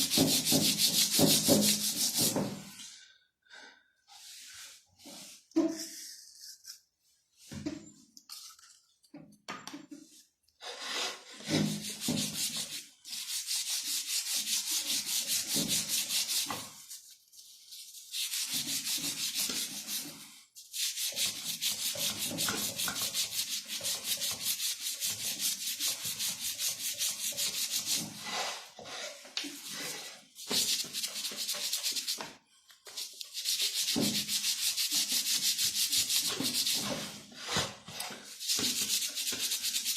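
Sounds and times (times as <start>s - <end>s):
fast scrubbing on metal hub: 20.7s - 28.1s.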